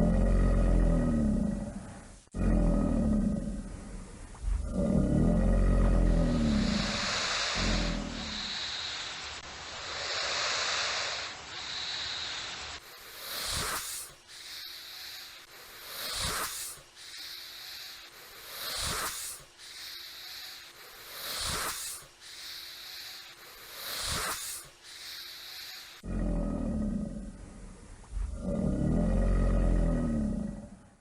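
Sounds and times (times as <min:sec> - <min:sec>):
alligator low rumbling bellow: 0:00.0 - 0:08.6, 0:26.0 - 0:30.9
alligator rasping surges: 0:00.0 - 0:27.4.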